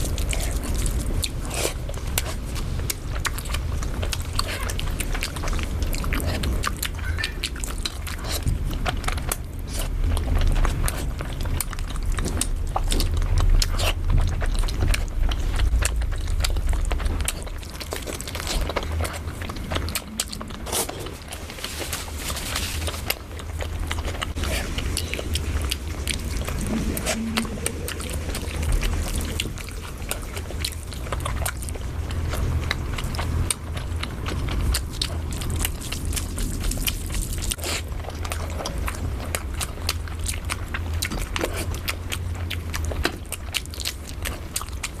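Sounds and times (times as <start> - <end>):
wet chewing and biting: 0.0 - 45.0
low rumble of mouth noise: 23.7 - 39.2.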